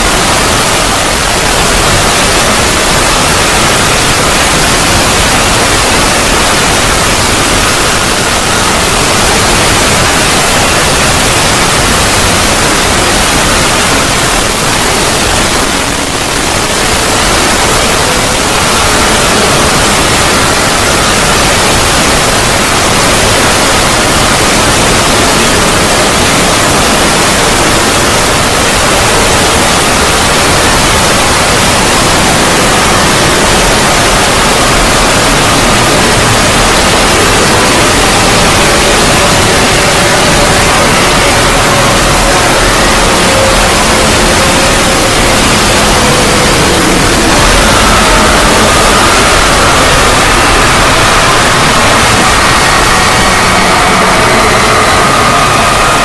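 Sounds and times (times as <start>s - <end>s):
static-like white noise: 0.0s - 56.0s.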